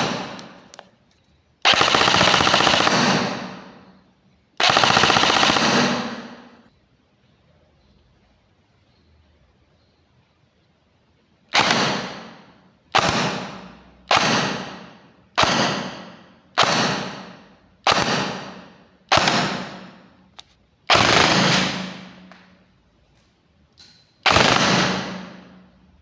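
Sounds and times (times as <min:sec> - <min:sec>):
airsoft gun firing bursts: 0:00.0 - 0:00.8, 0:01.7 - 0:03.8, 0:04.6 - 0:06.6, 0:11.6 - 0:20.0, 0:20.9 - 0:22.4, 0:24.2 - 0:25.6.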